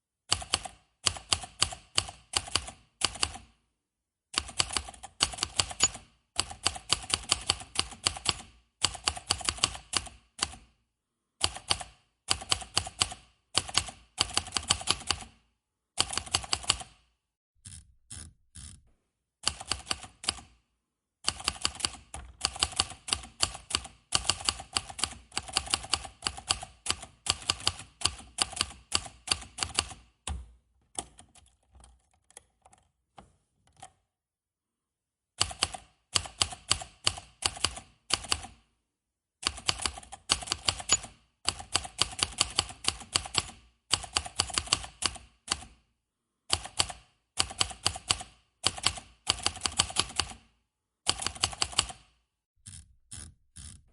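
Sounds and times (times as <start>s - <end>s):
manual typewriter keys clacking: 4.4s - 10.6s, 30.9s - 32.9s, 39.5s - 45.7s, 51.1s - 52.0s.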